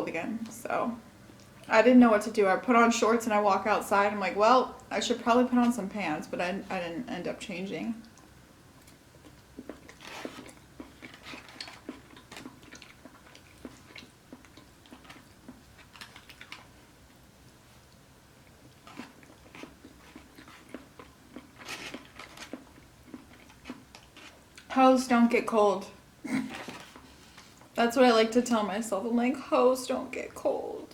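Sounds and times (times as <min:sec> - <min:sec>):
chewing crunchy food: 0:08.0 - 0:24.7.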